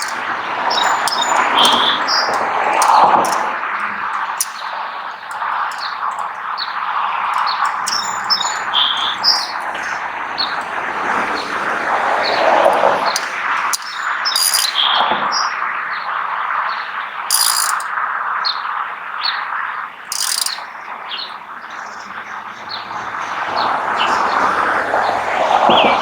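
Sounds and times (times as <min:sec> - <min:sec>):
small birds chirping: 0:00.0 - 0:15.0, 0:19.3 - 0:26.0.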